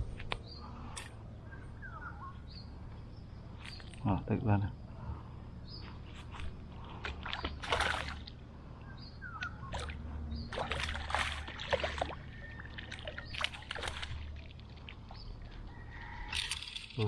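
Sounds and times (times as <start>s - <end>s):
water splashing and sloshing: 6.2s - 16.9s.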